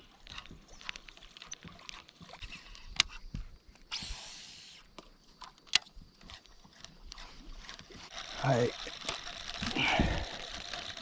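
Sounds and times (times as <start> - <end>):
fishing reel whirring: 6.7 - 11.0
fishing reel click: 7.1 - 11.0.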